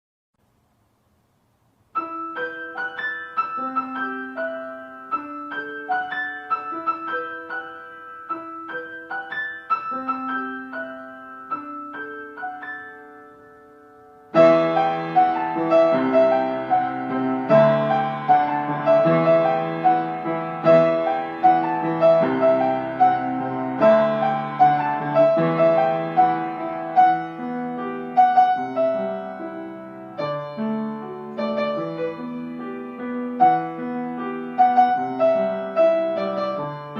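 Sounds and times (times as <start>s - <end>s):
calm piano music: 1.8s - 36.9s.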